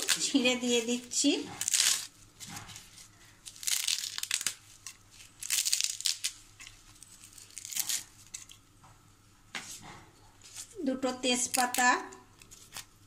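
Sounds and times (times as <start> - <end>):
leaves tearing and rustling: 0.0 - 8.6, 11.4 - 13.0.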